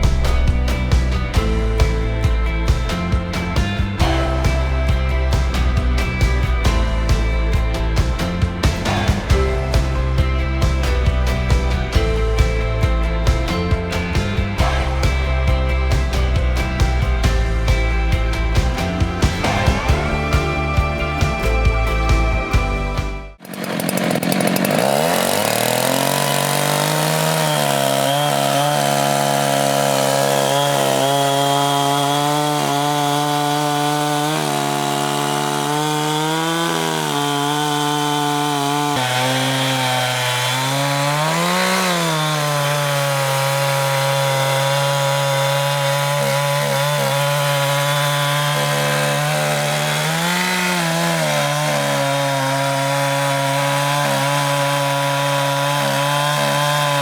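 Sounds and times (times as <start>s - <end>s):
chainsaw cutting a log: 0.0s - 57.0s.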